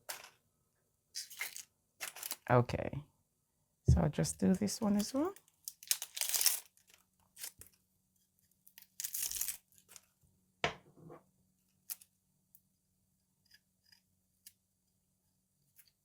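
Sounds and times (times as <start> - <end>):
onion skin tearing rustles: 5.7 - 7.7.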